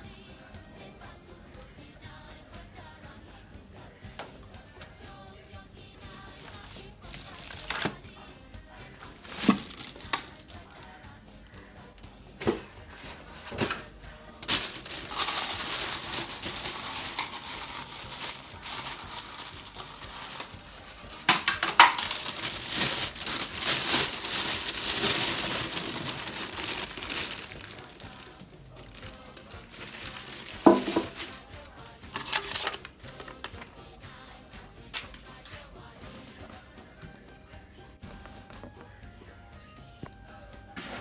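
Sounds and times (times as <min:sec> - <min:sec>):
packaging crinkling: 0:06.4 - 0:08.0, 0:09.0 - 0:10.9, 0:14.4 - 0:33.9
knocks and clinks of cooker parts: 0:21.2 - 0:22.2.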